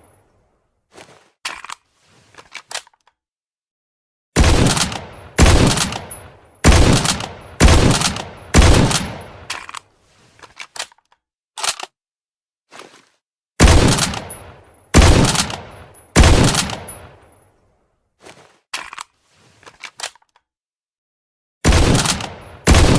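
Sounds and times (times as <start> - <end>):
rifle shots with reverb: 4.4 - 9.5, 13.6 - 17.2, 21.6 - 22.9.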